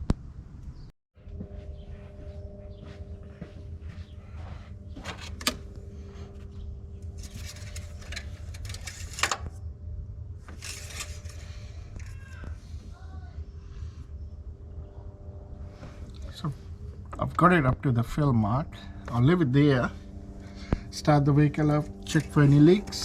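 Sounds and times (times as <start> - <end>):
steady low hum: 0.0 - 23.0
handling scrapes and rustles: 7.0 - 9.5, 10.4 - 12.4.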